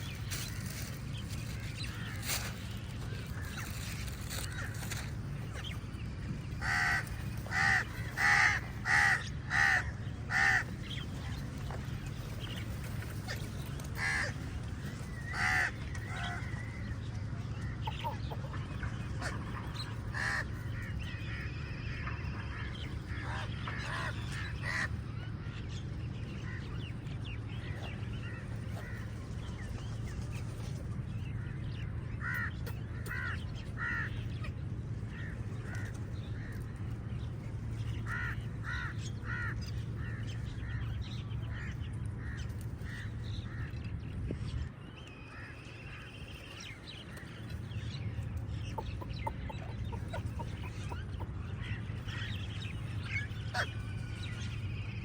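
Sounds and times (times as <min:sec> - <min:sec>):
steady low rumble: 0:00.0 - 0:55.0
crows cawing: 0:03.2 - 0:05.2, 0:06.6 - 0:10.9, 0:14.0 - 0:14.6, 0:15.2 - 0:16.8, 0:20.1 - 0:20.9, 0:23.2 - 0:24.9, 0:32.2 - 0:34.2, 0:38.0 - 0:40.8.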